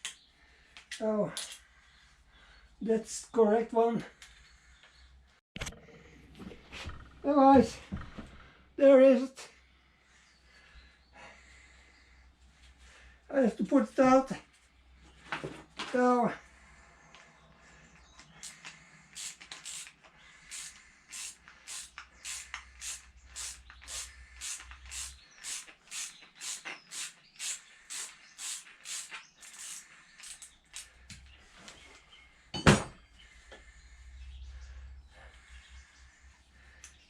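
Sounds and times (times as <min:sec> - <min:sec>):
hand tool strokes on metal: 0:20.5 - 0:31.0.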